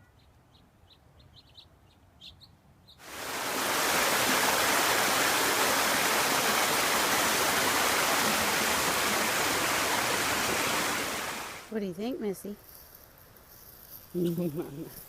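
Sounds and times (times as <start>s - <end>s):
running water rushing: 3.0s - 11.7s.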